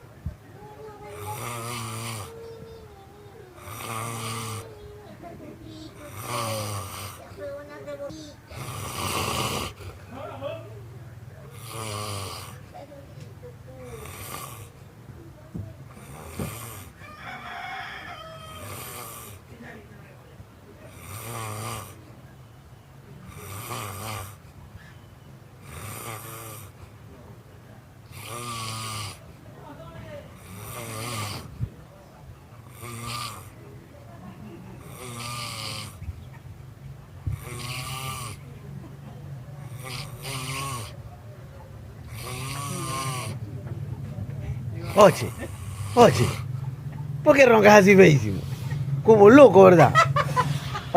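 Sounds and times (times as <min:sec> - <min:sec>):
person snoring: 0:00.6 - 0:02.8, 0:03.5 - 0:04.8, 0:06.0 - 0:07.3, 0:08.5 - 0:09.8, 0:11.5 - 0:12.6, 0:13.9 - 0:14.8, 0:18.6 - 0:19.4, 0:20.9 - 0:22.0, 0:23.3 - 0:24.4, 0:25.6 - 0:26.8, 0:28.1 - 0:29.2, 0:30.4 - 0:31.5, 0:32.7 - 0:33.6, 0:34.8 - 0:36.0, 0:37.3 - 0:38.4, 0:39.7 - 0:41.0, 0:42.1 - 0:43.4, 0:44.9 - 0:46.5.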